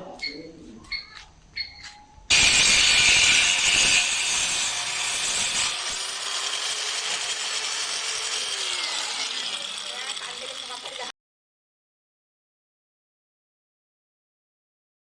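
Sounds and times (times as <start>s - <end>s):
angle grinder cutting steel: 2.3s - 11.1s.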